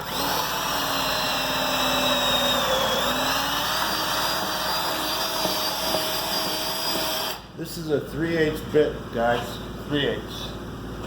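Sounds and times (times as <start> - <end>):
electric drill boring wood: 0.0 - 7.4.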